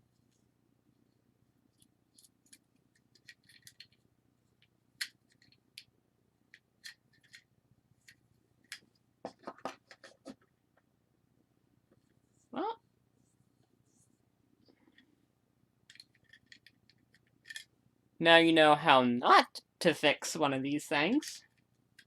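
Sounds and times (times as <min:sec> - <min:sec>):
faint low hum: 0:00.0 - 0:22.0
small lens parts clicking: 0:01.8 - 0:04.0, 0:15.9 - 0:17.7.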